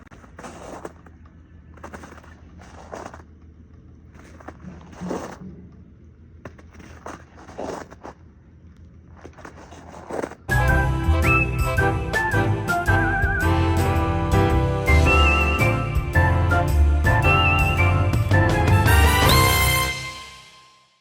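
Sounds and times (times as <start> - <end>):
footsteps crunching on ice: 0.0 - 3.3, 4.1 - 5.4, 6.4 - 8.3, 9.1 - 10.5
music: 10.5 - 21.0.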